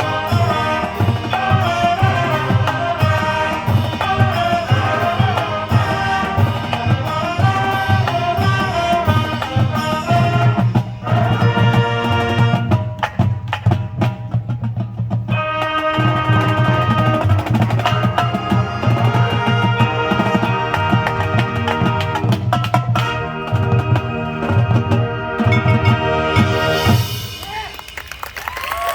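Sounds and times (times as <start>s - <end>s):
brass chords: 0.0s - 13.6s, 15.3s - 27.6s
drumline percussion: 0.0s - 28.9s.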